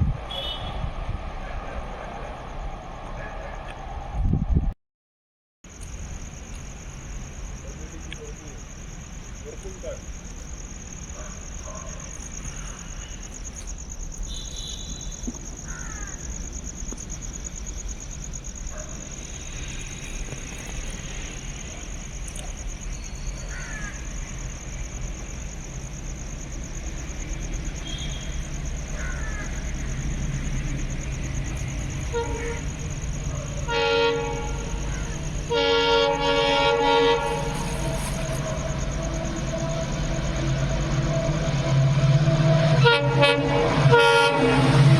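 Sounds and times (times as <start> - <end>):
locomotive rumble: 0.0 - 4.7, 5.7 - 44.9
multi-tone train horn: 0.2 - 0.9, 27.8 - 28.4, 32.1 - 32.7, 33.6 - 34.9, 35.5 - 44.9.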